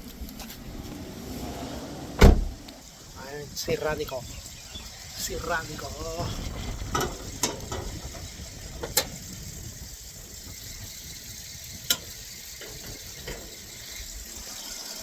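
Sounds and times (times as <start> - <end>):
low steady rumble: 0.0 - 3.8.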